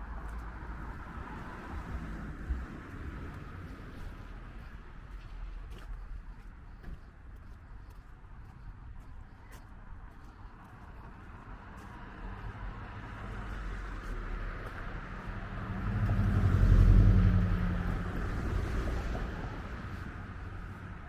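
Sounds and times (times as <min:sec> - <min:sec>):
vehicle passing by: 0:11.1 - 0:21.0.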